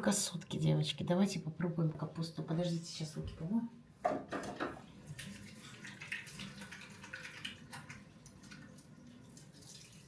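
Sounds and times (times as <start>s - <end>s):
hands washing under water: 4.4s - 10.0s
water running from a tap: 4.5s - 10.0s.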